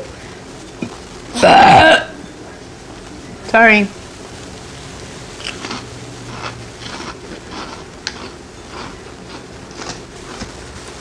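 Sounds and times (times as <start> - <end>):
chewing and crunching chips: 5.4 - 10.8.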